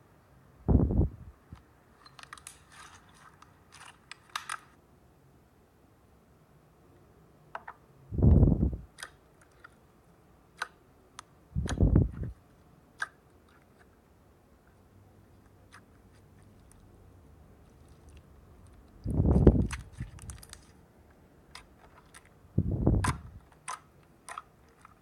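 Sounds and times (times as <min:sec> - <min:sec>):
sharp clicking pops: 0:22.9 - 0:24.4.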